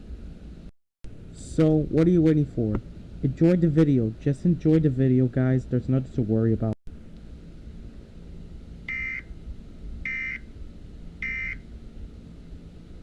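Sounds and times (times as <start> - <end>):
low steady hum: 0.0 - 13.0
buzzy electronic alert beeps: 8.9 - 9.2, 10.1 - 10.4, 11.2 - 11.6.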